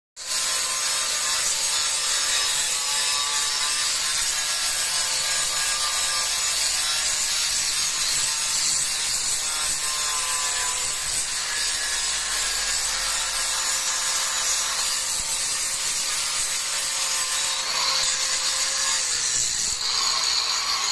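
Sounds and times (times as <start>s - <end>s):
grinder grinding stone: 0.2s - 20.9s.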